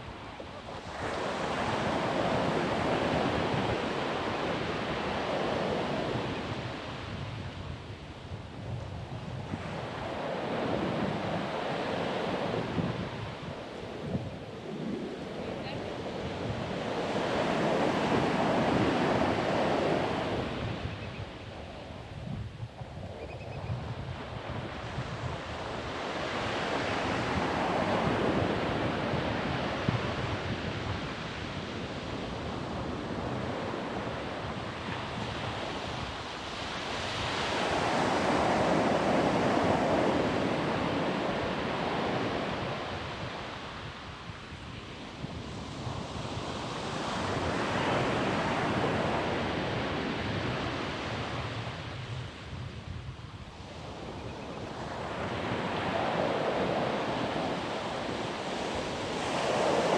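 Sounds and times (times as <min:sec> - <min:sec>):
wind buffeting microphone: 0:00.0 - 0:59.9
surf breaking on sandy beach: 0:09.5 - 0:20.9.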